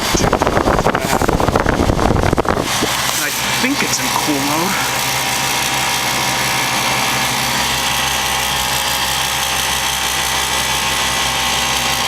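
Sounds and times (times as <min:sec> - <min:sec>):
compressor hum: 0:00.0 - 0:12.0
fan rushing: 0:00.0 - 0:12.0.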